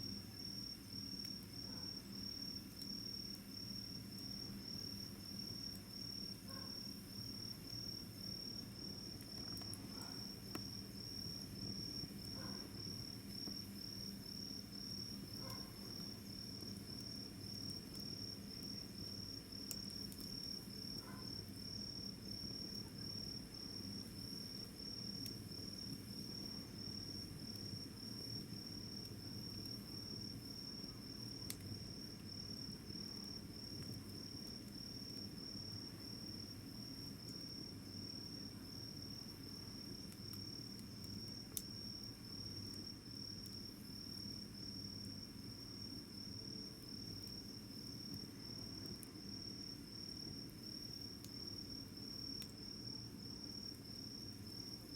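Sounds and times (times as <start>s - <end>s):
cricket chirping: 0.0s - 54.9s.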